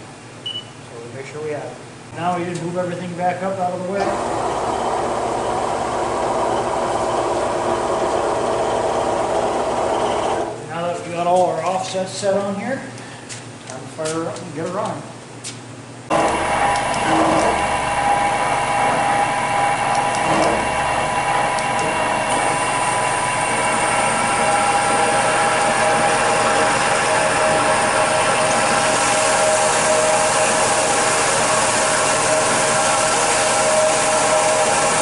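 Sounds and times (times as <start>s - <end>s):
milling machine spindle whine: 4.0s - 10.6s, 16.1s - 35.0s.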